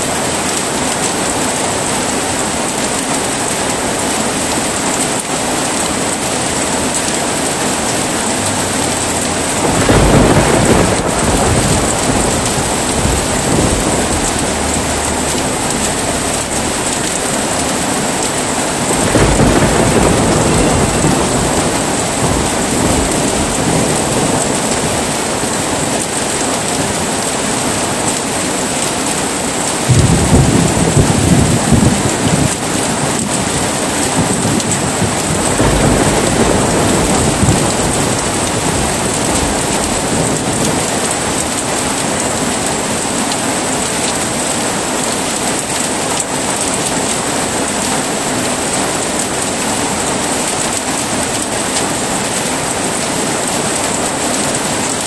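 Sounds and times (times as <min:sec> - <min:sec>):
heavy rain: 0:00.0 - 0:55.0
thunder rolling: 0:06.0 - 0:28.3, 0:29.2 - 0:44.9.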